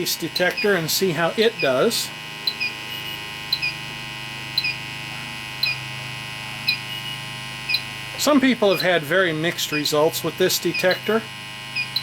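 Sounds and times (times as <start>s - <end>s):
steady hum: 0.0s - 12.0s
leak detector two-note peep: 2.4s - 3.8s, 4.6s - 4.8s, 5.6s - 5.9s, 6.6s - 7.9s, 10.7s - 11.1s, 11.8s - 12.0s.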